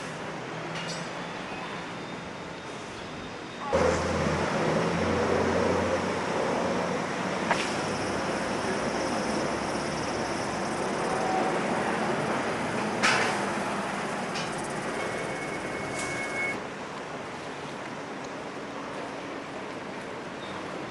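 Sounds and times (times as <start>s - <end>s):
vehicle rumble with low hum: 3.7s - 16.6s.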